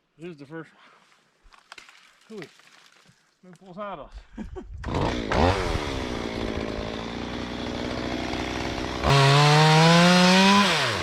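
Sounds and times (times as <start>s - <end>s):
chainsaw revving: 4.8s - 11.0s.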